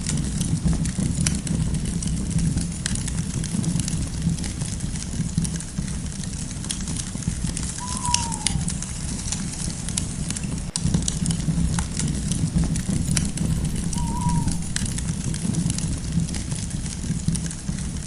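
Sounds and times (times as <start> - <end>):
campfire crackling and popping: 0.0 - 18.0
night bird call: 7.5 - 15.4
steady low rumble: 8.5 - 16.4.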